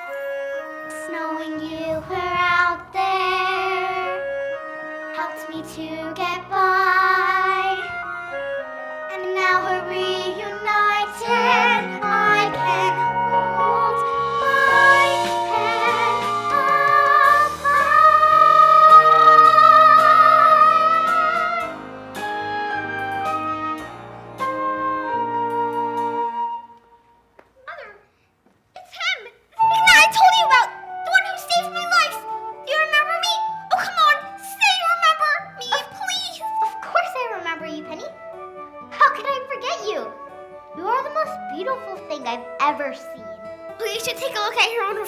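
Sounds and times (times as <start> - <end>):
instrumental accompaniment: 0.0 - 27.5, 29.6 - 45.0
person singing with vibrato: 9.4 - 21.8.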